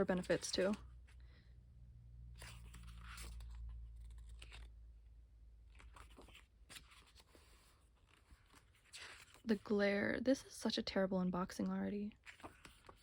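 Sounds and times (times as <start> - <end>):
paper pages turning: 0.0 - 0.9, 2.4 - 4.8, 5.6 - 9.8, 12.1 - 13.0.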